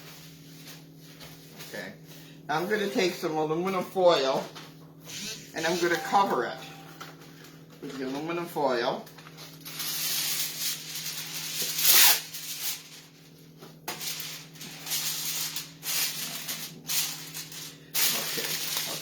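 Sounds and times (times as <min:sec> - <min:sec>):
aluminum foil crinkling: 0:09.0 - 0:19.0.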